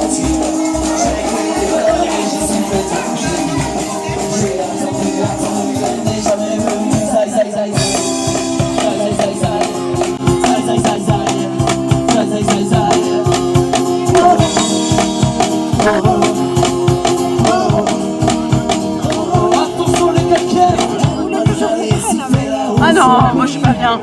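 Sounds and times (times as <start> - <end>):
shaker-like percussion: 0.0 - 7.1, 7.8 - 23.7
drums: 0.0 - 24.0.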